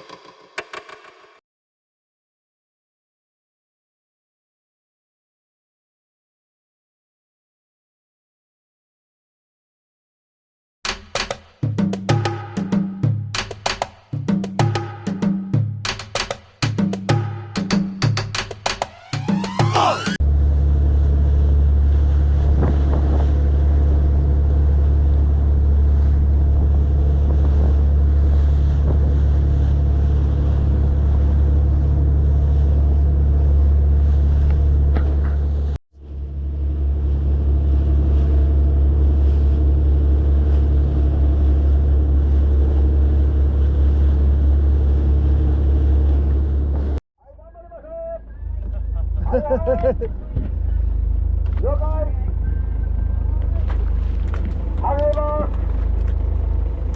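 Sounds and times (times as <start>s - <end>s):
boat engine droning: 19.0s - 47.0s, 48.3s - 56.9s
wind: 20.2s - 56.9s.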